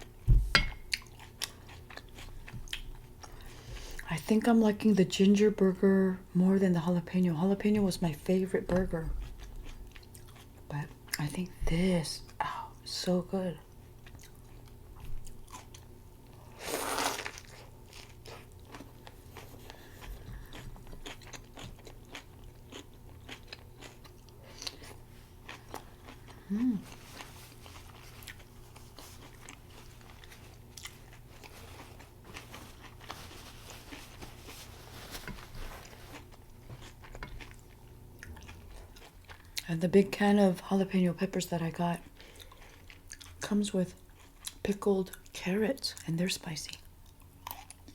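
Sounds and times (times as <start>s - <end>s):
person humming: 26.4s - 26.9s.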